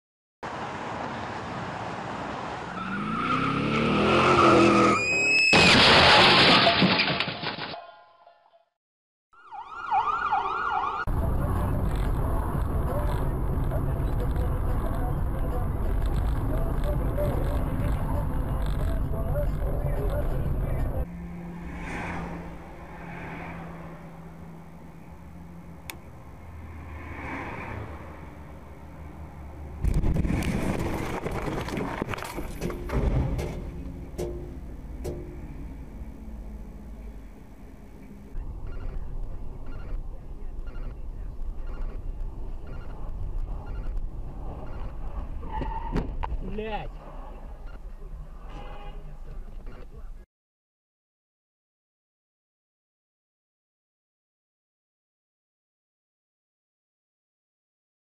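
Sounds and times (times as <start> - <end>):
road noise: 0.4 - 7.6, 9.4 - 50.3
loud skidding: 2.5 - 6.8, 21.5 - 24.0, 43.6 - 46.3
tyre squeal: 4.2 - 5.7, 38.6 - 41.0, 41.6 - 42.0, 42.6 - 46.3.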